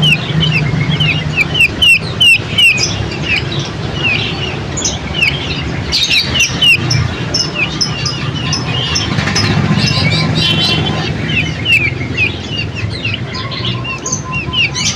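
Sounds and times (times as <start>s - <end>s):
songbirds chirping: 0.0s - 14.9s.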